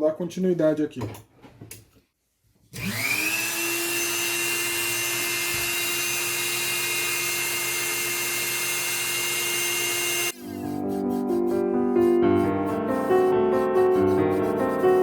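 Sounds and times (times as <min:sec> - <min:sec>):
rotary tool cutting metal: 0:02.8 - 0:15.0
music: 0:10.4 - 0:15.0.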